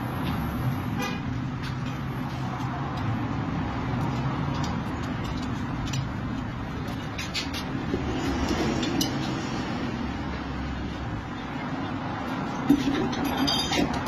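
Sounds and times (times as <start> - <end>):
vehicle engine humming: 0.0 - 14.0.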